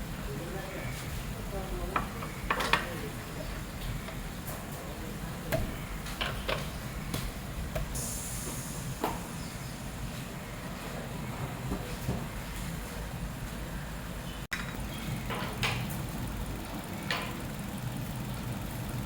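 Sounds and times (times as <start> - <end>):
low steady rumble: 12.5 - 19.0.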